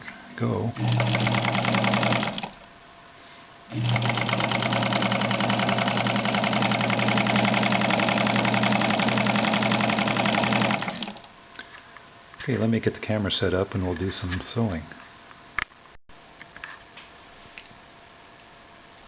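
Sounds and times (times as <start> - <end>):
sewing machine running: 0.8 - 2.6, 3.7 - 11.3.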